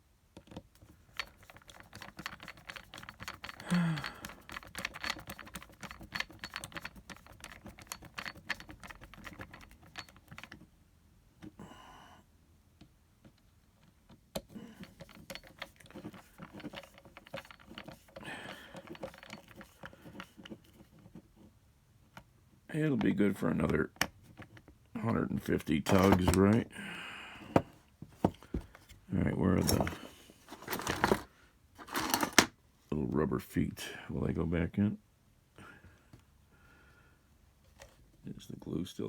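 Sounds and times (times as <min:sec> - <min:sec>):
small tools clicking and rattling: 0:00.5 - 0:10.7, 0:14.4 - 0:21.2, 0:25.8 - 0:26.6, 0:29.6 - 0:32.5.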